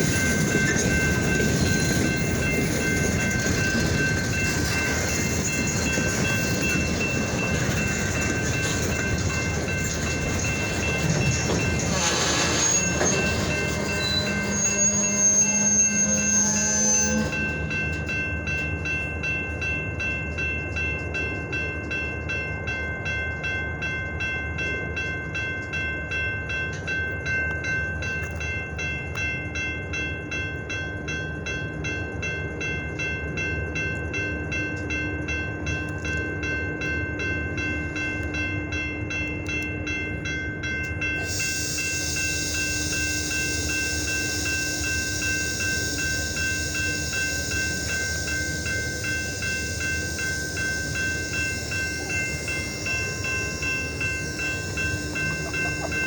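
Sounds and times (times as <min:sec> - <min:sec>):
high ringing tones: 0:00.0 - 0:20.3, 0:40.8 - 0:56.0
freight train rumbling: 0:00.0 - 0:56.0.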